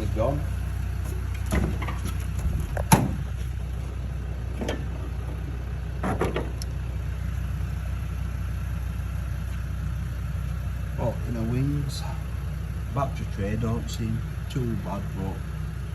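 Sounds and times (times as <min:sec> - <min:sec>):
steady low hum: 0:00.0 - 0:15.9
metallic clunks on car body: 0:01.0 - 0:03.4, 0:04.5 - 0:06.7.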